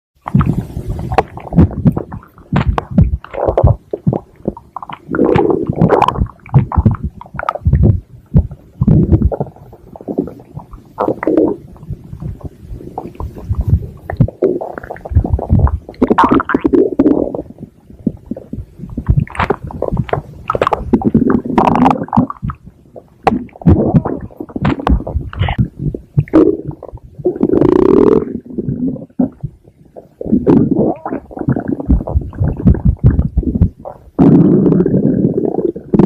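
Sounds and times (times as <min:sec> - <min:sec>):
stomach growling: 0:00.2 - 0:36.0.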